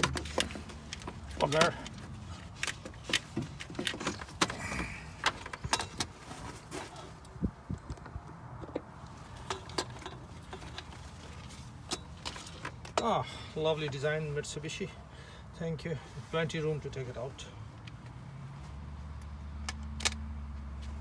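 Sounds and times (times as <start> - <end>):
metal clinks and knocks: 5.2 - 6.2, 8.6 - 13.2.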